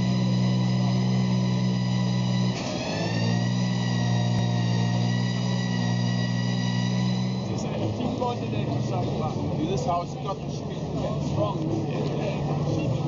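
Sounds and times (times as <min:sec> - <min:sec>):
droning chord of steady tones: 0:00.0 - 0:09.6.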